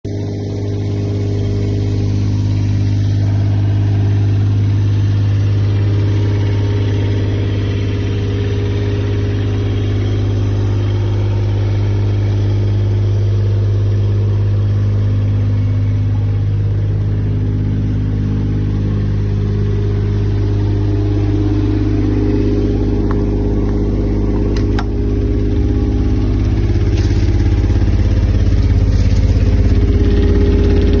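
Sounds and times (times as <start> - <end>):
diesel engine running: 0.0 - 31.0
sharp clicks: 24.5 - 25.0.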